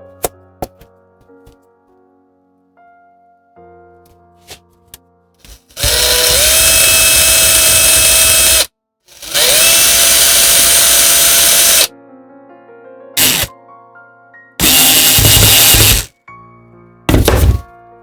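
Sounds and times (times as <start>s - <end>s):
rotary power tool spinning: 5.5s - 11.9s, 13.2s - 13.5s, 14.6s - 16.1s.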